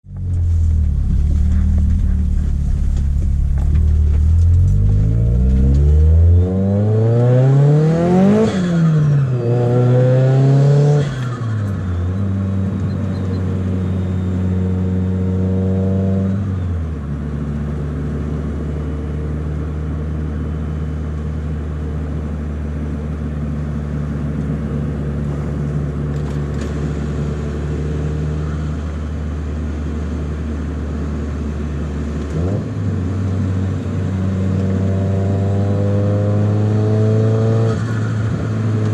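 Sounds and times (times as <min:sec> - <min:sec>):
turbocharged car engine revving: 0:00.1 - 0:11.9.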